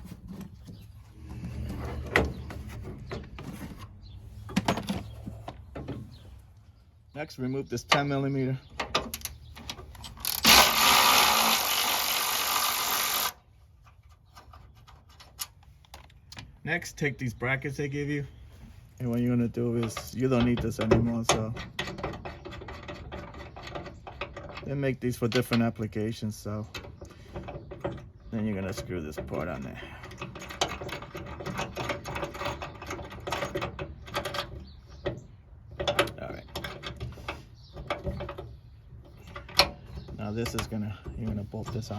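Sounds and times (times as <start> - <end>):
power ratchet spinning: 10.2 - 13.4.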